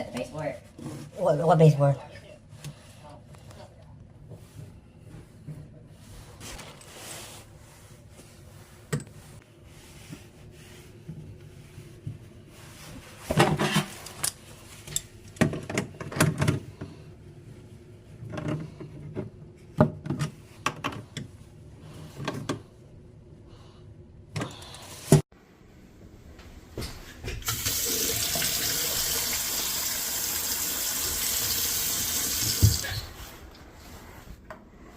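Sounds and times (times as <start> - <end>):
water running from faucet: 27.4 - 33.1.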